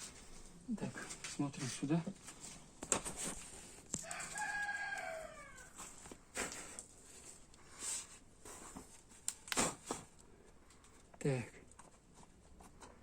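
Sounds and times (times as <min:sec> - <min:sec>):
rooster crowing: 0:03.9 - 0:06.0.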